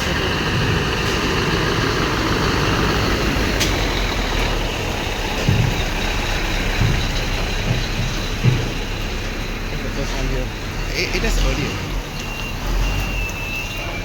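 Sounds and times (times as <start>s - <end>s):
truck engine running: 0.0s - 14.0s
dull low thumps: 2.9s - 9.8s.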